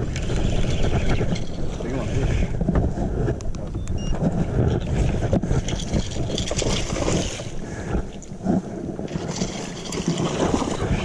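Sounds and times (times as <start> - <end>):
water moving around boat: 0.0 - 11.0
wind buffeting microphone: 0.0 - 11.0.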